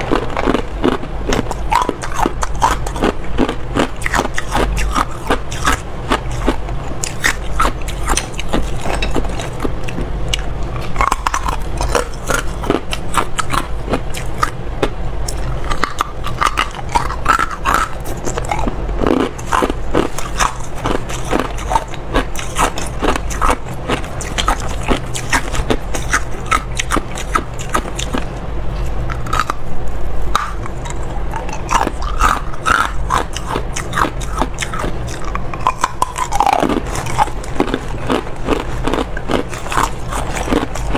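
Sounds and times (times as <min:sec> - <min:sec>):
person crunching ice: 0:35.8 - 0:40.7.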